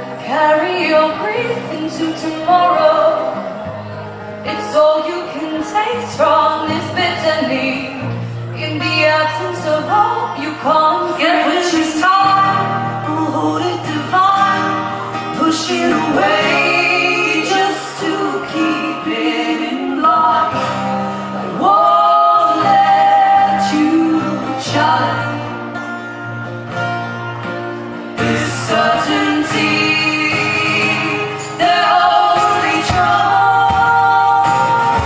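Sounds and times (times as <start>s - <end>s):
acoustic guitar: 0.0s - 35.0s
person singing: 8.6s - 25.8s, 28.2s - 35.0s.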